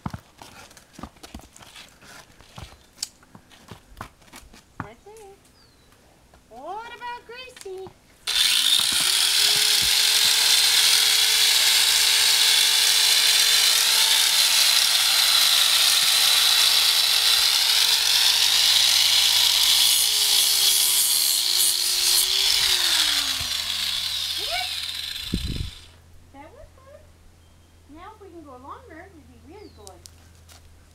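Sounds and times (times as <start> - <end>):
angle grinder grinding hoof: 8.3 - 26.0.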